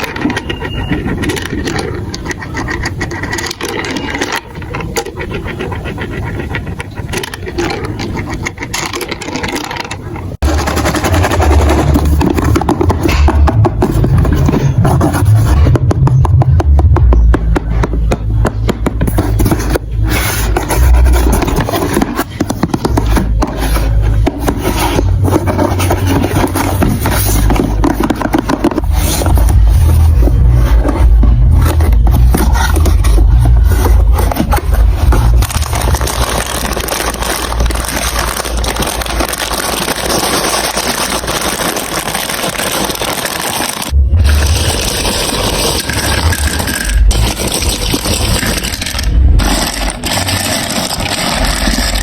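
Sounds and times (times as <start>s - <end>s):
marbles clattering on plastic track: 0.0s - 5.6s, 6.5s - 15.1s, 20.5s - 52.0s
deep rolling rumble: 10.3s - 39.8s, 43.9s - 52.0s.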